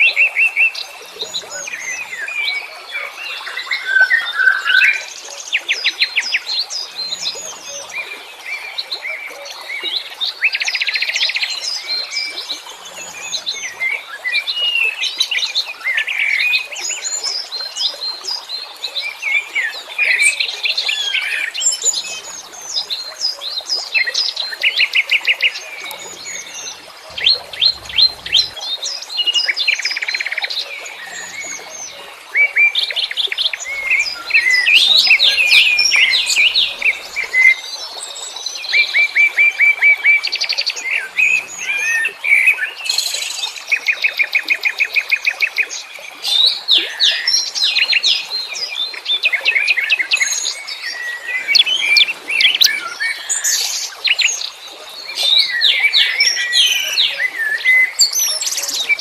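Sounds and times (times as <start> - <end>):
songbirds chirping and singing: 25.4 - 29.2, 33.3 - 37.6.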